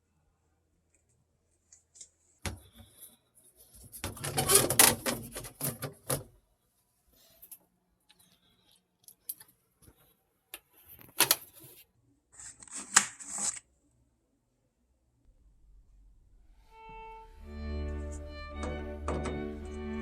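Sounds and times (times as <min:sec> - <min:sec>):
bowed string music: 0:16.7 - 0:20.0.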